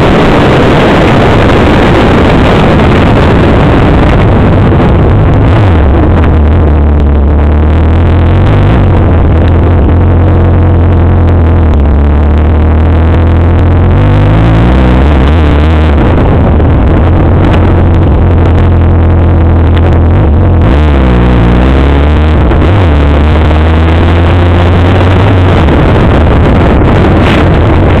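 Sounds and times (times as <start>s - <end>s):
atv engines revving: 19.8s - 28.0s.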